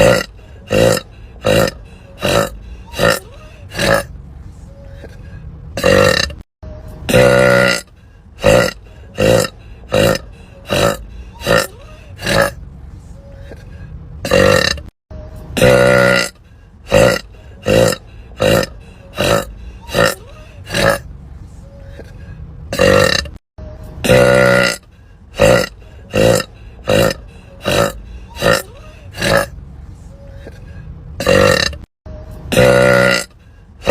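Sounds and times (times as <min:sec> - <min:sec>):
woman burping: 0:00.0 - 0:04.1, 0:05.8 - 0:06.4, 0:07.1 - 0:12.6, 0:14.2 - 0:14.9, 0:15.6 - 0:16.3, 0:16.9 - 0:21.0, 0:22.7 - 0:23.4, 0:24.0 - 0:24.8, 0:25.4 - 0:29.5, 0:31.2 - 0:31.9, 0:32.5 - 0:33.3.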